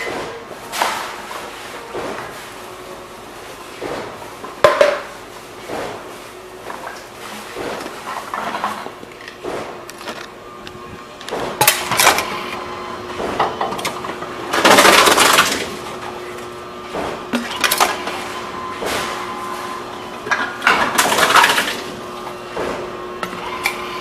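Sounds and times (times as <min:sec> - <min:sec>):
vending machine humming: 0:00.0 - 0:24.0
containers clattering: 0:06.7 - 0:10.3, 0:13.2 - 0:16.2, 0:17.2 - 0:22.1.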